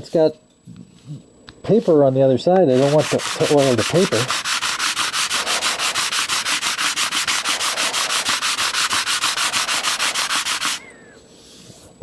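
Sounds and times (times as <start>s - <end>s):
sandpaper rubbing on wood: 2.7s - 10.9s.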